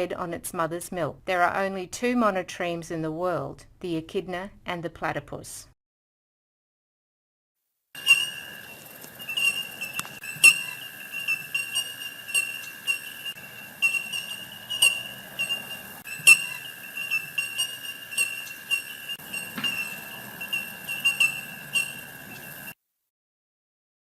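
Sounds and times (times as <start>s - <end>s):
steady high whine: 8.0s - 22.7s.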